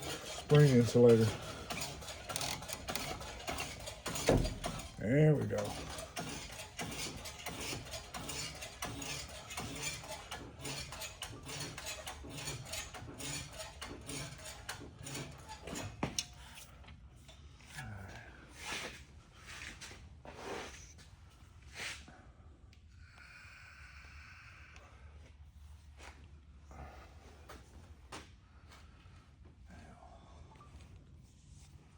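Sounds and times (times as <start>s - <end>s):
metal tools clinking and rattling: 0.0s - 16.0s.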